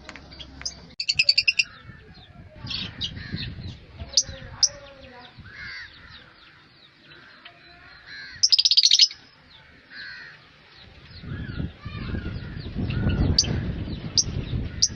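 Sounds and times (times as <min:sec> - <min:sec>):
birds chirping: 0:00.0 - 0:14.9
shrill bird chatter: 0:00.2 - 0:14.9
low rumbling noise: 0:09.2 - 0:14.9.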